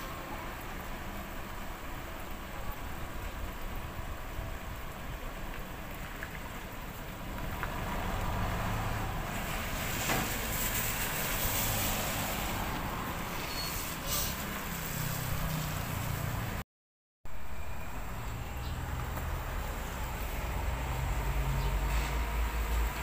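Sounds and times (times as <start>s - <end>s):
vehicle passing close by: 7.5s - 13.3s, 17.6s - 23.0s.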